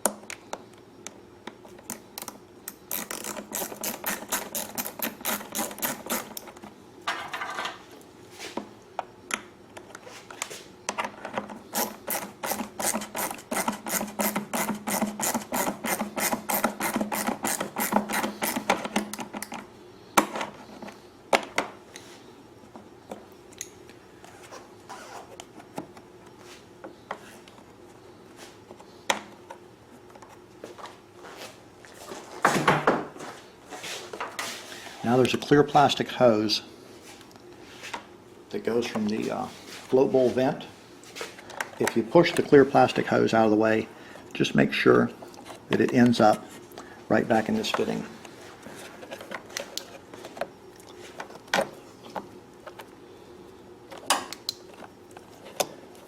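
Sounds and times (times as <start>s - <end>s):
hand ratchet clicking: 2.2s - 6.5s, 11.8s - 18.6s.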